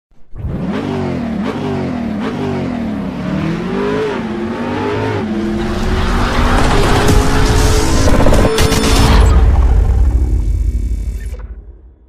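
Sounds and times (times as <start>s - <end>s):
car engine revving: 0.3s - 10.8s.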